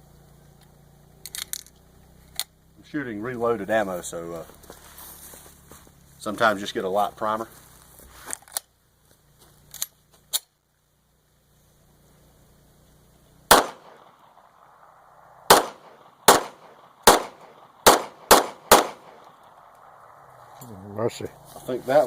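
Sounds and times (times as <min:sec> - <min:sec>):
pistol shots: 0:13.5 - 0:20.2.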